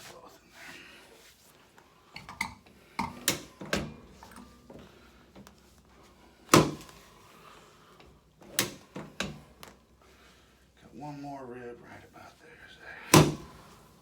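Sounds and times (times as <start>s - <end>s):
chiropractic knocks and clicks: 6.5s - 7.0s, 13.2s - 13.6s.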